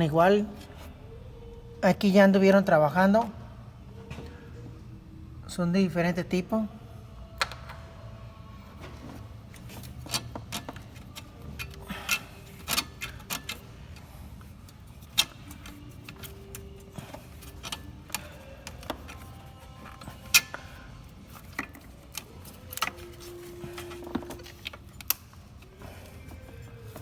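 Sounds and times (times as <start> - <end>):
hand tools clicking on metal: 9.5 - 27.0.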